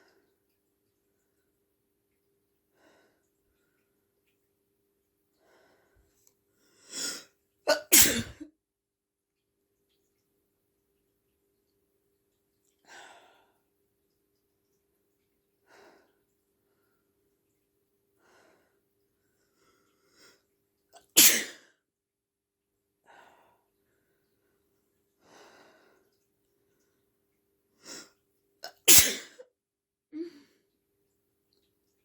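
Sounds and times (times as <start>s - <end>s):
person sneezing: 7.0s - 8.4s, 21.0s - 21.6s, 28.7s - 29.4s.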